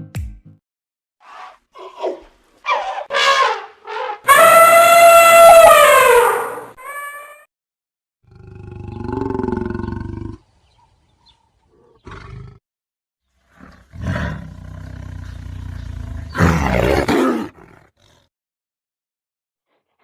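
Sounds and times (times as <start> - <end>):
big cat roaring: 8.3 - 10.4, 11.8 - 12.6, 13.5 - 18.3.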